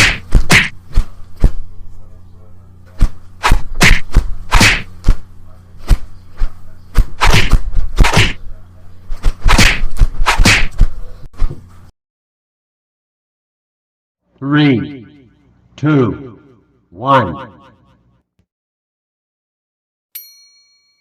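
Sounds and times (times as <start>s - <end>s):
sharp hit whacks: 0.0s - 1.1s, 3.0s - 5.2s, 7.0s - 8.4s, 9.2s - 10.9s
short swishes: 3.0s - 5.2s, 5.8s - 8.4s, 9.1s - 11.0s.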